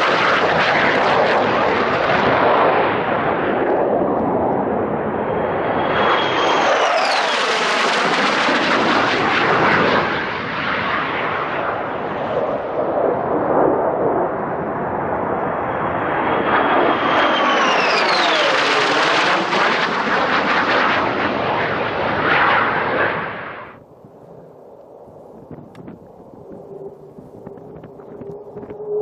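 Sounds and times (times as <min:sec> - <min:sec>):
jet whine falling in pitch: 0:00.0 - 0:24.6, 0:25.4 - 0:29.0
jet engine noise with crackle: 0:00.0 - 0:29.0.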